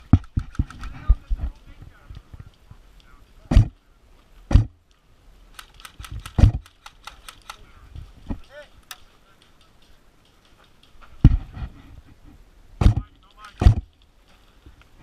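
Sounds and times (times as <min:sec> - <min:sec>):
sharp clicks: 0:00.0 - 0:03.8, 0:04.5 - 0:07.7, 0:08.4 - 0:11.3
short thumps: 0:03.4 - 0:03.8, 0:04.5 - 0:04.8, 0:05.9 - 0:06.7, 0:12.8 - 0:14.0.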